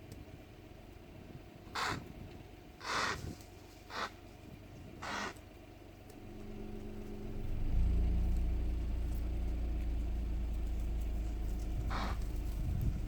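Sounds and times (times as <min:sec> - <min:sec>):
vehicle engine running: 0:03.5 - 0:13.0
impala call: 0:03.9 - 0:04.2, 0:05.0 - 0:05.4, 0:06.2 - 0:13.0.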